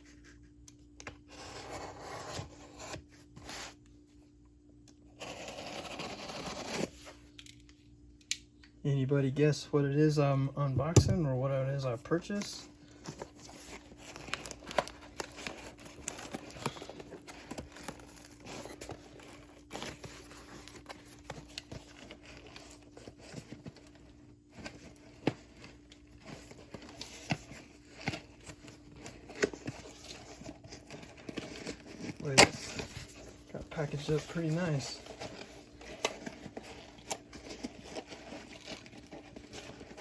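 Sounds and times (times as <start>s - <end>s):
faint steady hum: 0.0s - 40.0s
packaging crinkling and rustling: 11.2s - 40.0s
tape tearing: 24.6s - 40.0s.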